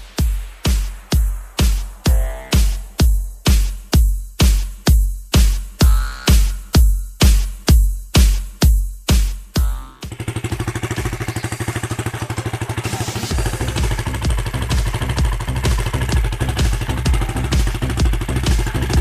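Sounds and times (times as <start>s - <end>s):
heavy low thumping: 0.0s - 10.8s, 13.3s - 19.0s
motorcycle engine idling: 9.6s - 19.0s.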